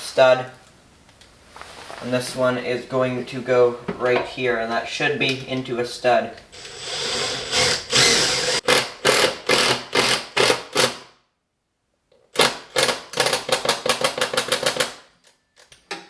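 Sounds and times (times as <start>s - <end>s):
power drill driving a screw into wood: 6.6s - 11.0s.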